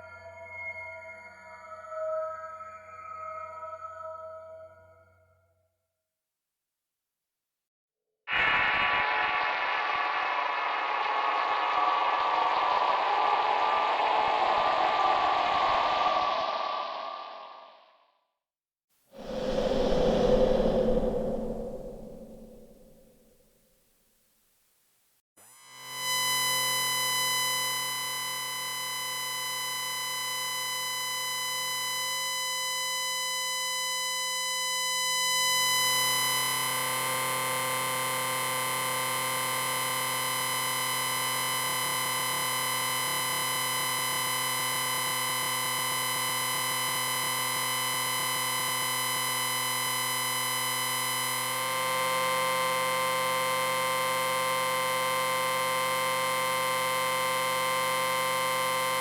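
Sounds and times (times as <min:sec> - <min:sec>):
electric ringing drone: 0:19.2 - 0:23.1.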